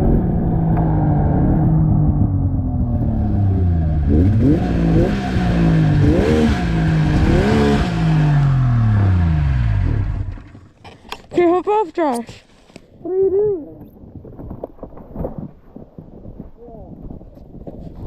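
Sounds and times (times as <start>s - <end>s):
snowmobile engine revving: 0.0s - 10.5s.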